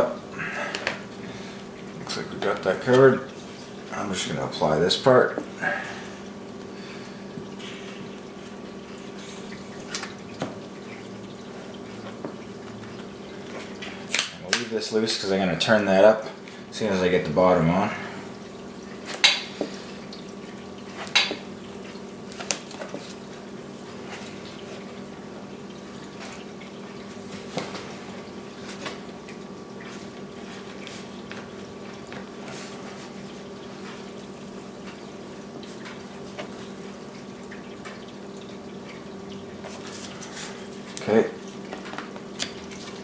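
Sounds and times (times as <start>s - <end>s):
steady hum: 0.0s - 43.0s
taps and crinkles of vinyl: 20.9s - 24.9s, 39.6s - 43.0s.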